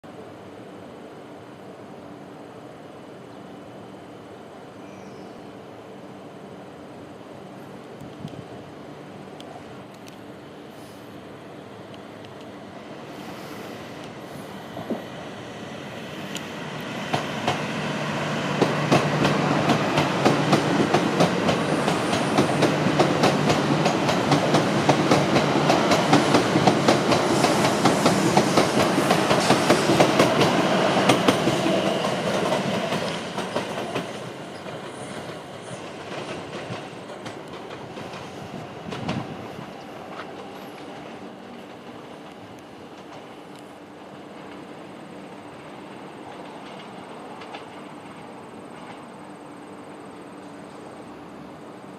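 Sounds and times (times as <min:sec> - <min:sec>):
train passing: 0:00.1 - 0:51.9
wheels clacking over rail joints: 0:18.4 - 0:43.4.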